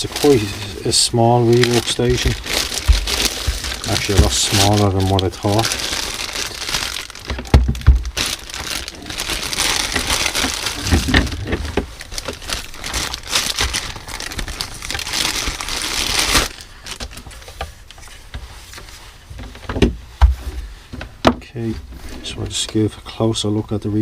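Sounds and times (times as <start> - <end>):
packaging crinkling and rustling: 0.0 - 19.7.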